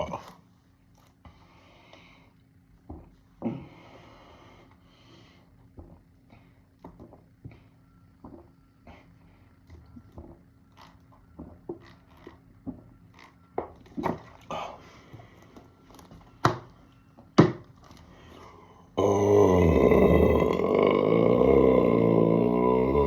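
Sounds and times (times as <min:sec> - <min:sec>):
loud drawn-out burp: 0:19.0 - 0:23.0
person gulping and swallowing: 0:19.0 - 0:23.0.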